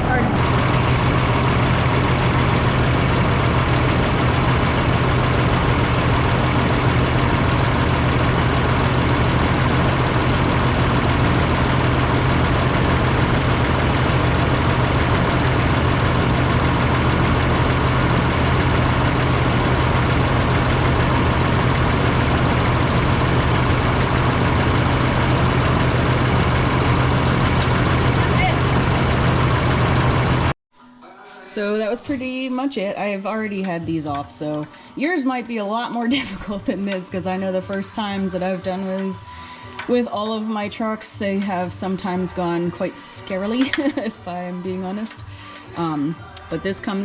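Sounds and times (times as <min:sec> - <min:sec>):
pickup engine idling: 0:00.0 - 0:30.5.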